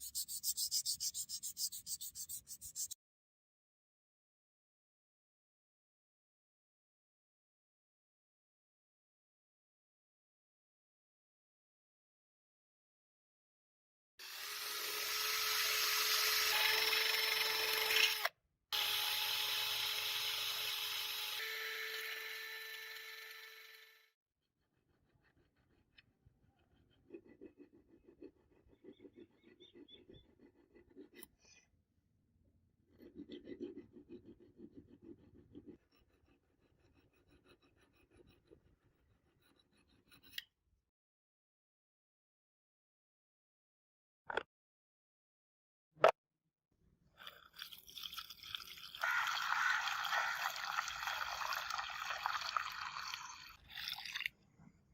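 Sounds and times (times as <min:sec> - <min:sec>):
scrubbing strokes on a surface: 0:00.0 - 0:03.0
power tool whirring: 0:14.2 - 0:24.0.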